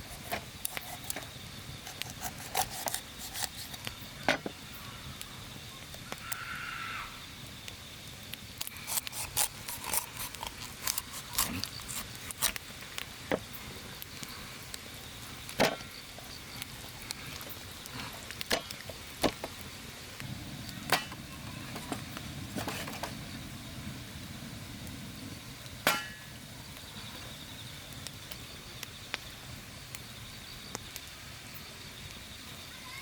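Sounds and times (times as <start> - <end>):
low steady rumble: 20.2 - 22.6.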